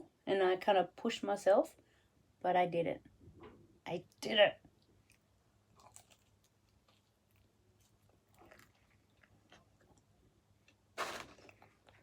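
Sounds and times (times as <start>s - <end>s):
person chewing food: 4.8s - 12.0s.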